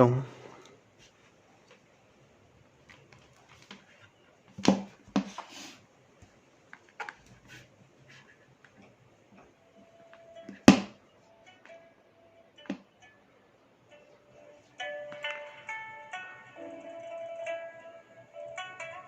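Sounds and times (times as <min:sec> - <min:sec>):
faint steady tone: 0:08.0 - 0:19.0.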